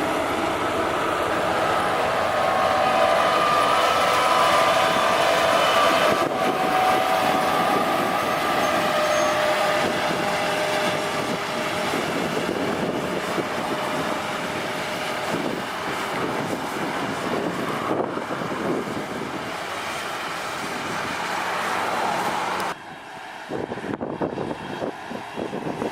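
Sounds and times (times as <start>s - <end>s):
whine dropping in pitch: 0.0s - 14.5s
diesel engine running: 0.0s - 22.8s.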